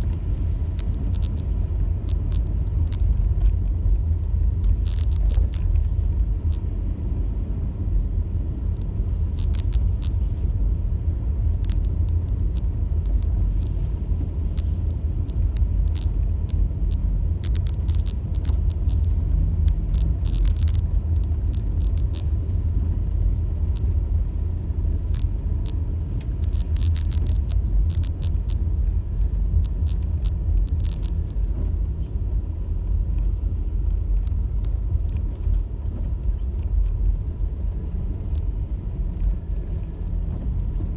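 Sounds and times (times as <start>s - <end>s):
short ticks and clicks: 0.0s - 6.7s, 8.7s - 10.5s, 11.4s - 22.5s, 23.6s - 32.0s
tyre and engine rumble: 0.0s - 40.9s.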